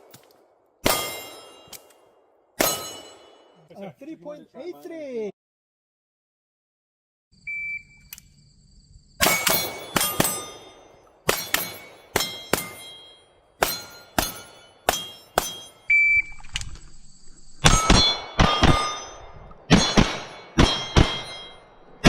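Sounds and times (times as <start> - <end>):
pistol shots: 0.8 - 1.9, 2.6 - 3.5, 9.2 - 13.0, 13.6 - 15.8, 17.6 - 22.0
steel targets ringing: 0.8 - 1.9, 2.6 - 3.6, 9.2 - 15.9, 17.6 - 22.0
shot timer beep: 15.9 - 16.4.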